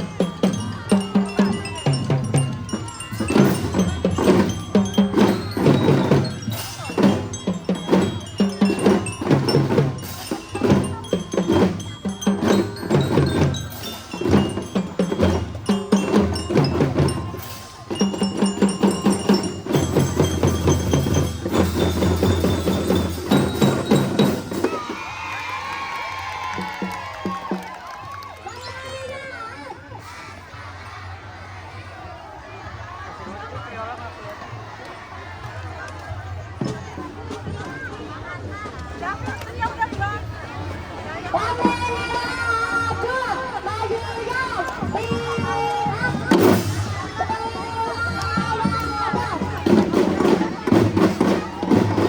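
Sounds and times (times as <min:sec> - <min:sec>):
bell lyra melody: 0:00.0 - 0:24.8
drums beating march rhythm: 0:00.0 - 0:29.0, 0:29.6 - 0:52.0
people cheering: 0:00.0 - 0:52.0.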